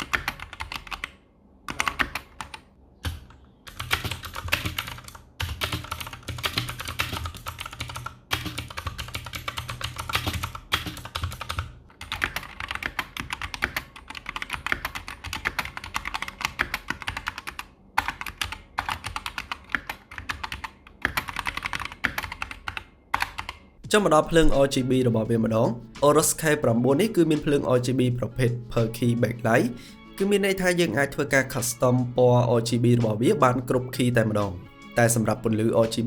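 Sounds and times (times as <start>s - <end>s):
typing on mechanical keyboard: 0.0s - 23.6s.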